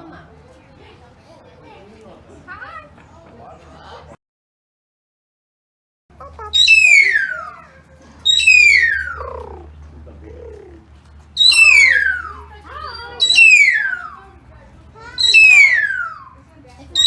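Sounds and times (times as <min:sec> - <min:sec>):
cockatoo falling whistled calls: 0:06.6 - 0:07.6, 0:08.2 - 0:09.7, 0:11.4 - 0:14.2, 0:15.0 - 0:16.4.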